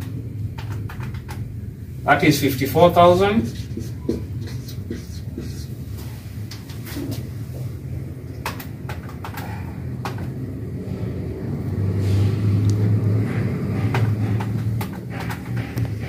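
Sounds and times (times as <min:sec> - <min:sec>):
low rumble: 0:10.0 - 0:16.0.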